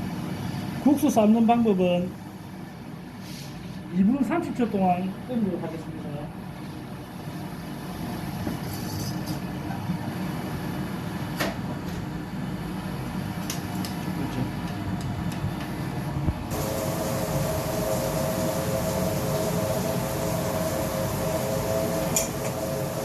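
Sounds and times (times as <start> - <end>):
hiss with steady whine: 15.8 - 23.0.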